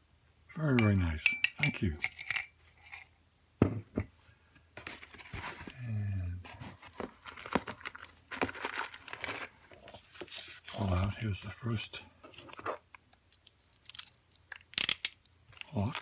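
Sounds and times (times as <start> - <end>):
packaging rustling and crinkling: 4.8 - 5.9, 6.5 - 11.6.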